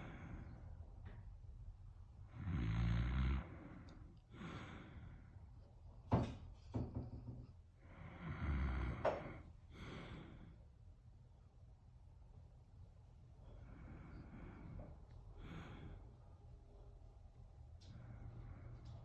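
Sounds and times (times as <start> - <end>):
loud low snores: 2.3 - 4.0, 7.8 - 9.5.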